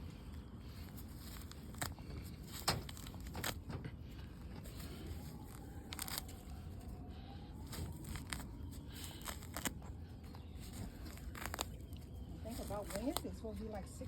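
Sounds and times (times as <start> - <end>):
low steady rumble: 0.0 - 14.0
weeds pulled and torn: 0.0 - 14.0.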